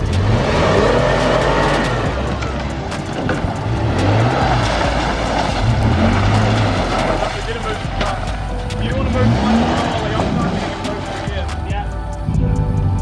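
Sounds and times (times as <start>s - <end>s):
vehicle engine working hard: 0.0s - 12.0s
constant rushing noise: 0.0s - 13.0s
sharp clicks: 0.1s - 4.9s.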